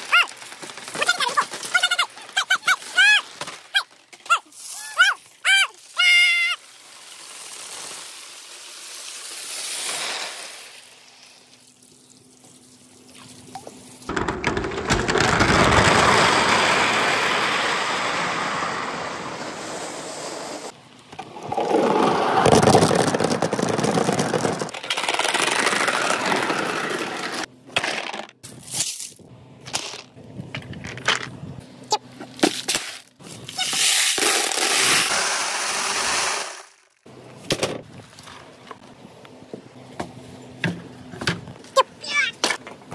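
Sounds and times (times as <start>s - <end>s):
balls rolling through bamboo tubes: 0.0s - 6.6s, 14.1s - 28.4s.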